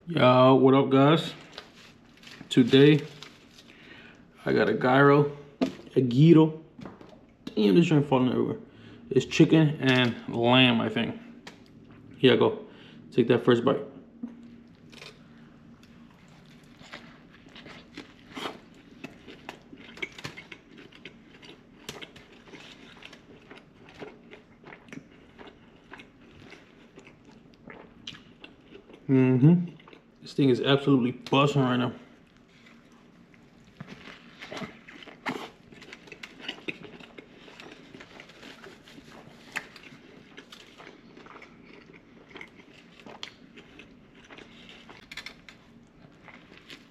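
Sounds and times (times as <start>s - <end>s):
close chewing with wet clicks: 15.8s - 30.2s, 32.2s - 46.9s.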